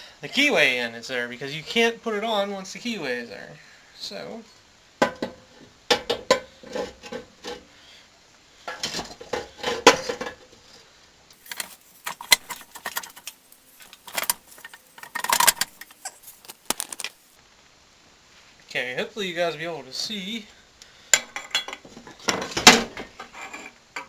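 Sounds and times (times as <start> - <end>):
metallic clinks and knocks: 11.4 - 17.3.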